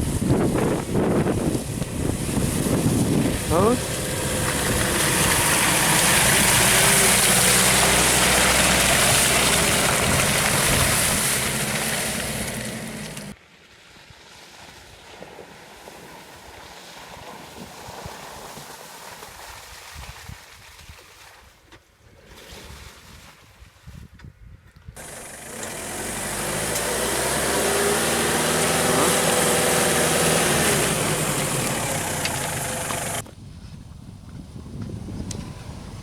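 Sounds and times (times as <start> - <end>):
suv engine running: 0.0 - 13.4, 25.0 - 33.2.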